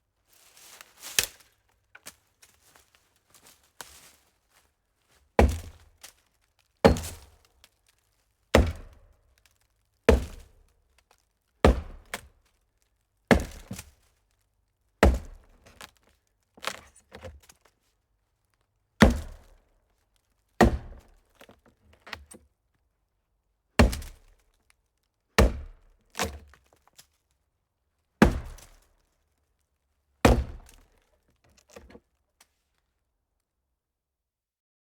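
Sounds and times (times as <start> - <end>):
wood cracking: 0.8 - 4.1, 5.4 - 12.3, 28.2 - 28.9, 30.2 - 32.0
axe chopping wood: 5.4 - 5.9, 6.8 - 7.4, 8.5 - 9.1, 10.1 - 10.5, 11.6 - 12.3, 13.3 - 13.9, 15.0 - 15.8, 19.0 - 19.6, 20.6 - 21.2, 23.8 - 24.3, 25.4 - 26.6, 28.2 - 28.8, 30.2 - 30.9.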